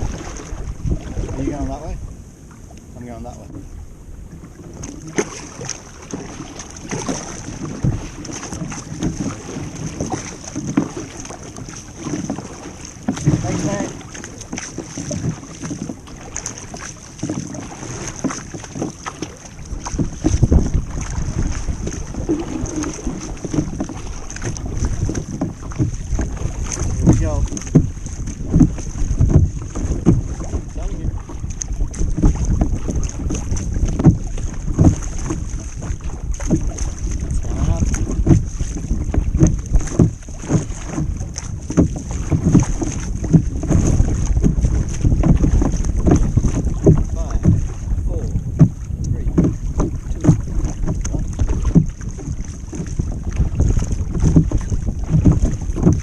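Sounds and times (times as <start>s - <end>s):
water sloshing against kayak hull: 0.0s - 56.0s
wind rumbling on microphone: 0.0s - 56.0s.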